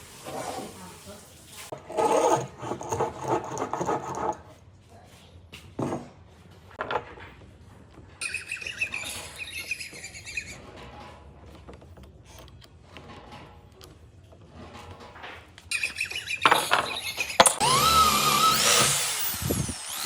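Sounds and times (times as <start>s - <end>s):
small bird twittering: 15.7s - 17.4s.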